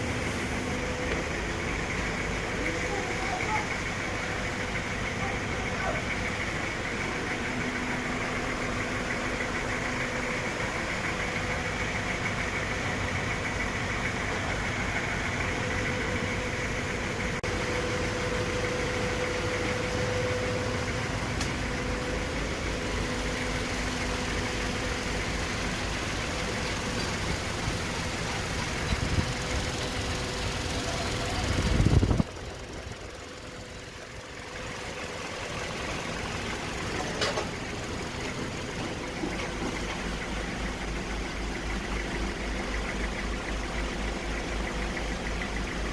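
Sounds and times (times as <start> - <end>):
engine idling: 0.0 - 45.9.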